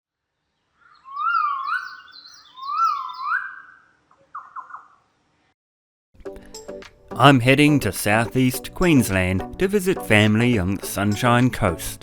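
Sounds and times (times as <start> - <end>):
bird whistling call: 0.9 - 5.0.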